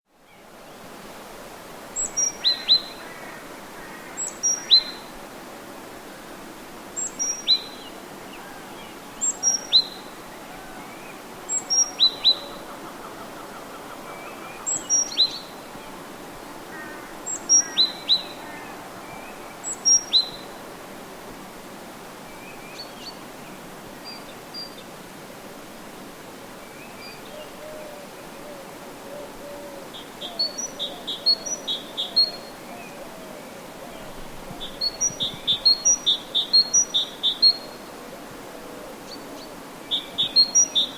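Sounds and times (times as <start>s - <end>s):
steady background hiss: 0.1s - 40.9s
songbird singing: 7.0s - 20.8s, 26.6s - 40.9s.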